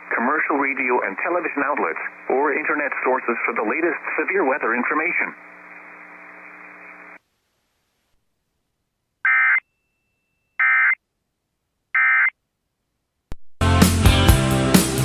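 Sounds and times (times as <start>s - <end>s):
radio hiss: 0.0s - 7.3s.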